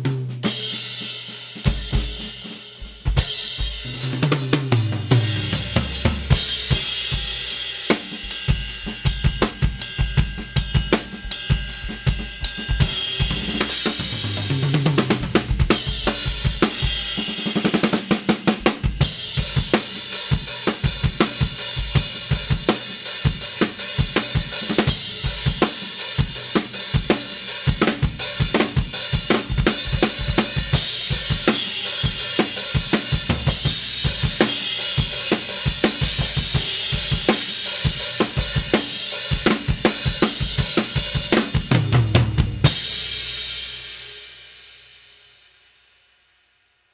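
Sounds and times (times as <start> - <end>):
drum kit groove: 0.0 - 44.9
ringing cymbal wash: 5.2 - 14.7, 42.6 - 45.9.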